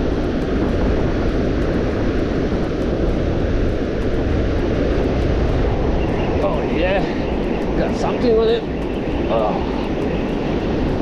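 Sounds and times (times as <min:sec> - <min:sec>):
wind buffeting microphone: 0:00.0 - 0:11.0.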